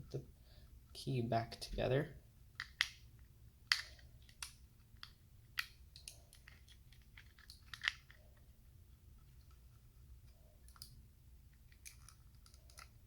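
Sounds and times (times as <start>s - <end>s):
plastic pieces clicking together: 3.7s - 8.2s, 11.6s - 13.0s.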